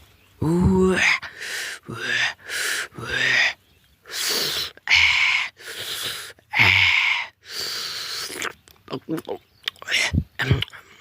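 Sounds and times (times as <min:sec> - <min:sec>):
person exclaiming and gasping: 0:00.4 - 0:07.3.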